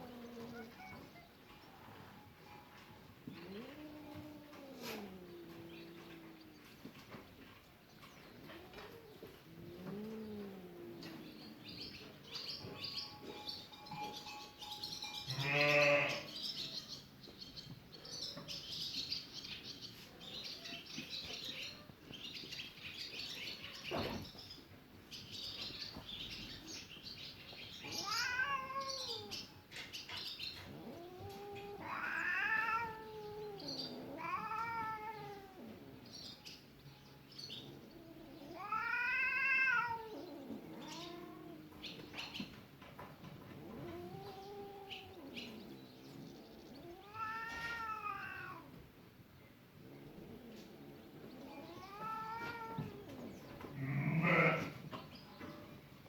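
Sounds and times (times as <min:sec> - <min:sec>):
cats meowing: 0:00.0 - 0:07.5, 0:08.1 - 0:13.4, 0:15.3 - 0:16.8, 0:27.7 - 0:29.9, 0:30.5 - 0:36.2, 0:37.5 - 0:48.9, 0:49.8 - 0:54.8.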